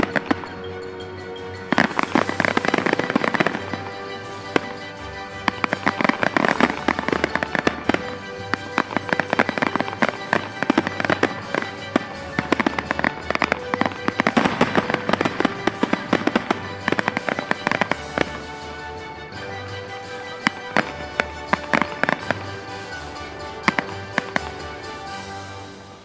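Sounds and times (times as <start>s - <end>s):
fireworks crackling and popping: 0.0s - 0.7s, 1.6s - 26.0s
background music: 0.0s - 26.0s.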